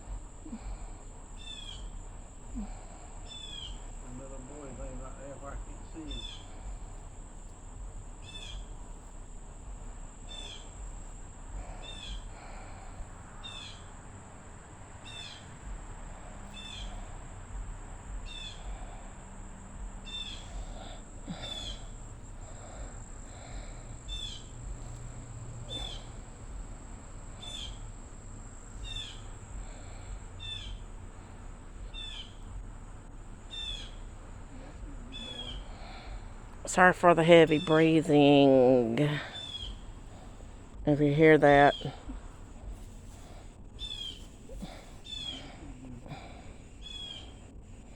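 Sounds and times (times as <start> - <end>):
high-pitched insect whine: 0.0 - 47.9
bird chirping: 1.3 - 12.3, 13.4 - 14.0, 15.0 - 15.8, 16.4 - 17.2, 18.1 - 18.8, 19.8 - 31.1, 31.8 - 32.6, 33.2 - 46.0, 46.8 - 47.5.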